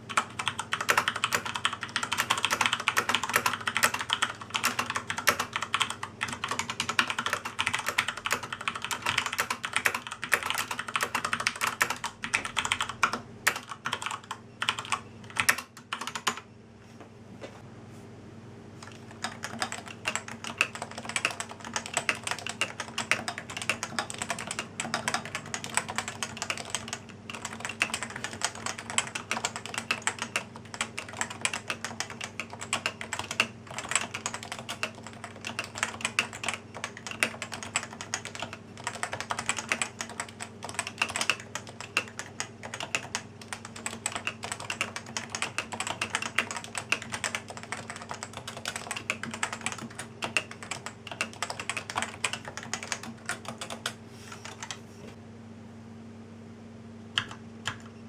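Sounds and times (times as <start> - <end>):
fast keyboard typing: 0.0 - 16.5, 18.8 - 54.8, 57.2 - 58.0
faint steady hum: 0.0 - 58.0.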